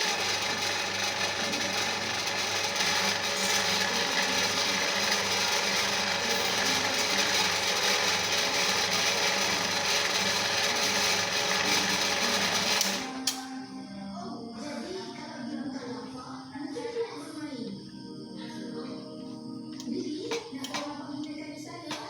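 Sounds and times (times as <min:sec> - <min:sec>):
ice-shaving machine grinding: 0:00.0 - 0:13.4.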